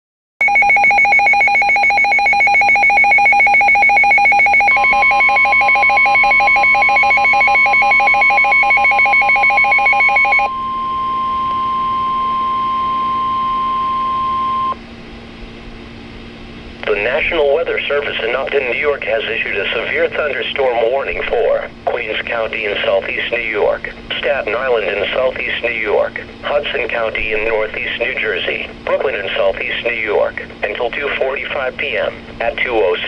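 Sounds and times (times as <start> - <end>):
fast-pulsing ringing alarm: 0.4 - 14.8
steady one-pitch warning tone: 0.4 - 33.0.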